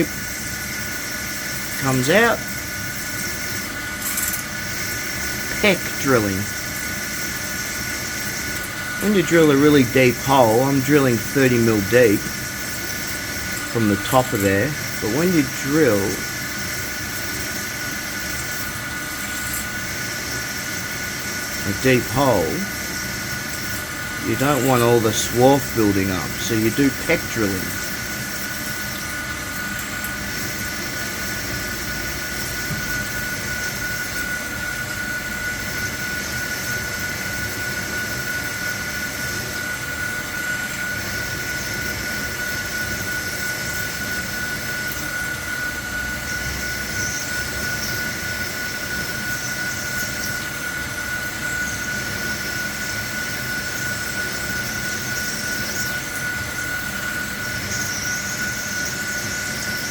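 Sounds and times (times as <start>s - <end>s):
spindle whine: 0.0s - 36.2s
drill squealing: 0.0s - 38.6s, 39.2s - 59.9s
machine hiss: 0.0s - 59.9s.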